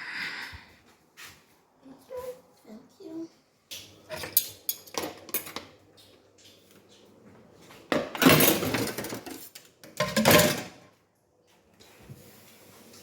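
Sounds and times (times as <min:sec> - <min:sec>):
dishes and cutlery clattering: 0:04.0 - 0:05.8, 0:07.9 - 0:10.8.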